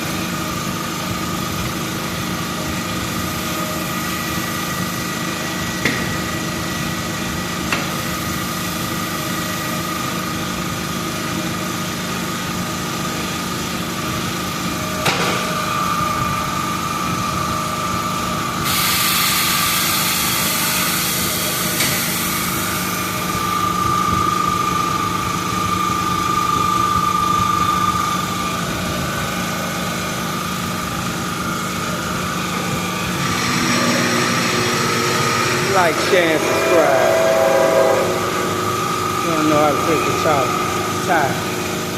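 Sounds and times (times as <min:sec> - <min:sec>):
machine humming: 0:30.9 - 0:41.9.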